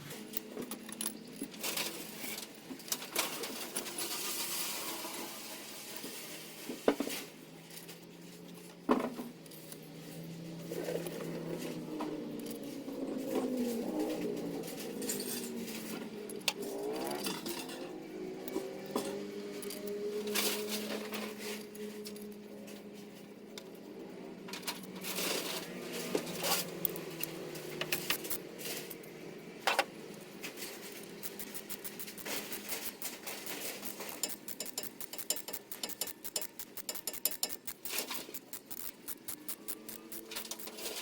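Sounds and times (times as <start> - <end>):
ratchet clicking: 26.8 - 28.4, 30.9 - 41.0
metal clicks and knocks: 31.0 - 41.0.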